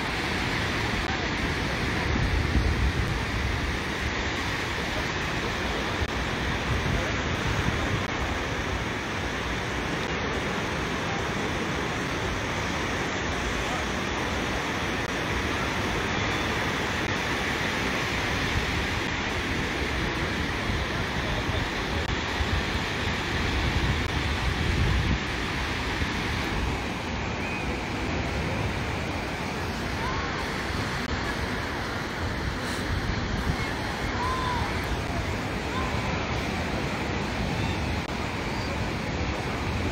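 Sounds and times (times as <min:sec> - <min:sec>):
wind buffeting microphone: 0:00.0 - 0:09.0, 0:18.2 - 0:39.9
ocean surf: 0:00.0 - 0:39.9.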